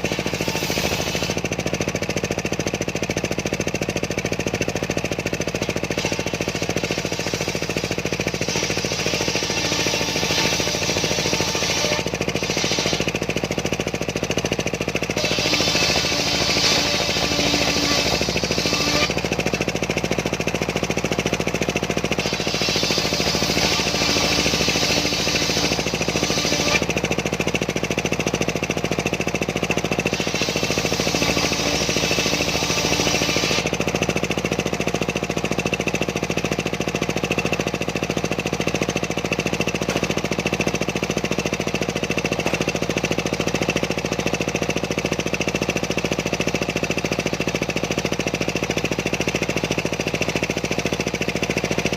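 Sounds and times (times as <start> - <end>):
saw blade cutting wood: 0.0 - 2.2, 5.4 - 14.1, 15.0 - 20.3, 21.2 - 27.5, 29.7 - 34.6, 39.6 - 40.5
sawmill engine running: 0.0 - 51.9.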